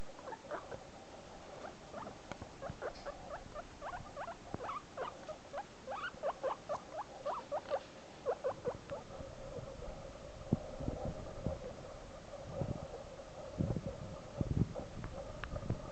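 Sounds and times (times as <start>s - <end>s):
guinea pig squeaking: 0.1s - 0.8s, 1.6s - 9.0s.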